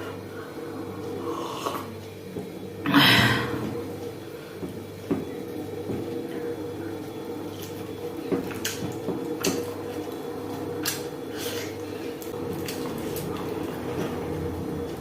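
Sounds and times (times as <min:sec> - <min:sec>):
steady low hum: 0:00.0 - 0:15.0
wet chewing and smacking: 0:07.5 - 0:10.2, 0:10.8 - 0:15.0.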